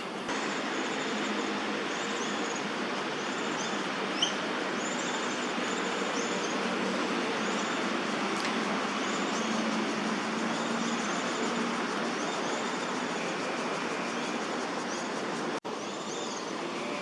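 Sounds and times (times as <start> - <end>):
city traffic hum: 0.0 - 17.0.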